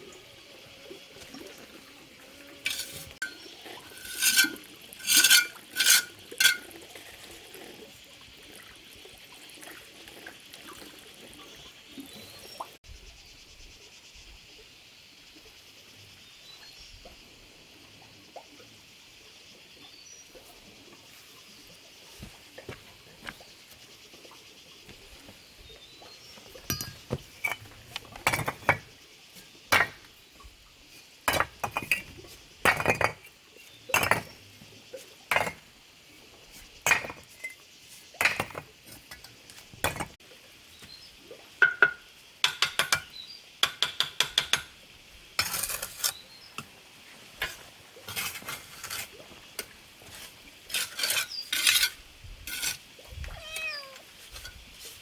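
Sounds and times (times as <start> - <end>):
trowel scraping and tapping bricks: 2.6 - 6.7, 26.5 - 30.1, 31.3 - 33.3, 33.9 - 34.4, 35.3 - 35.6, 36.8 - 37.6, 38.2 - 40.2, 45.4 - 46.7, 47.4 - 52.8, 53.5 - 55.0.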